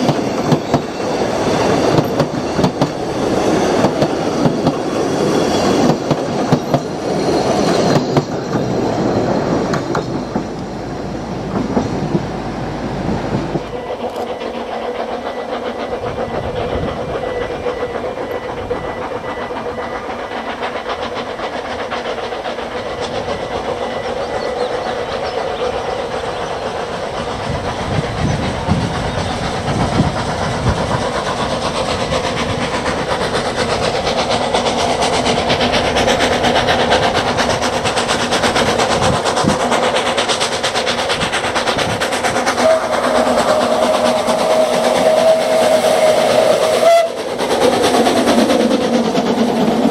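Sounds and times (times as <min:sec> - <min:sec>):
steam train clattering: 0:00.0 - 0:49.9
train whistle: 0:13.6 - 0:21.0, 0:42.5 - 0:47.8.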